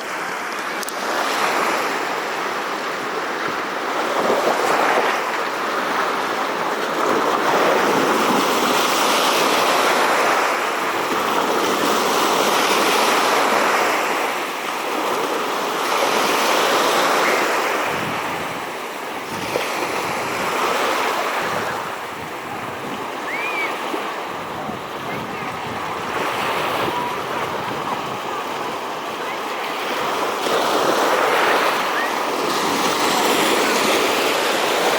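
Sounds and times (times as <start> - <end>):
sea water rushing: 0.0 - 34.9
wind buffeting microphone: 17.8 - 20.8, 21.4 - 29.3.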